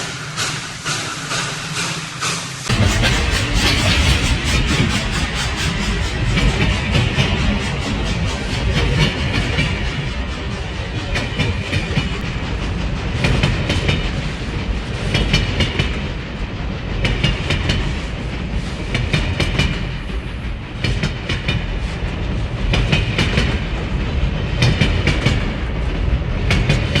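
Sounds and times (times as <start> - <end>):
railroad cars rumbling: 0.0 - 27.0.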